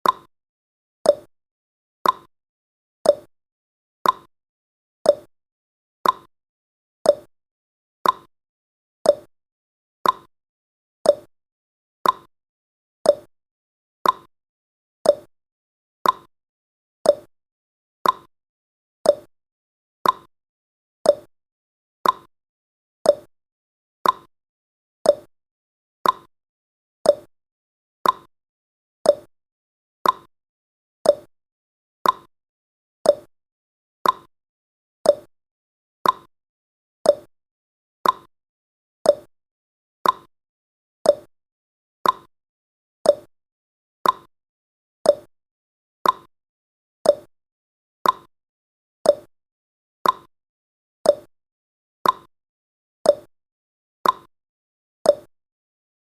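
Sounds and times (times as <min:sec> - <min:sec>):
clock ticking: 0:18.0 - 0:18.3, 0:34.0 - 0:34.3, 0:38.0 - 0:38.3, 0:42.0 - 0:42.3, 0:48.0 - 0:48.3, 0:50.0 - 0:50.3.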